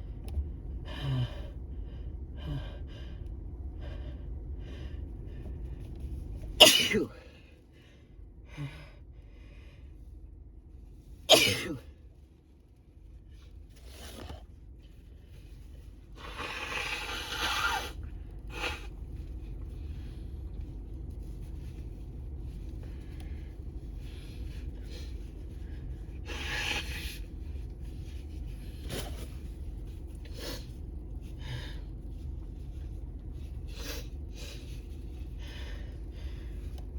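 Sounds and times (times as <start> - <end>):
room hum: 0.0 - 36.9
noisy breathing: 0.8 - 5.7, 22.8 - 27.5.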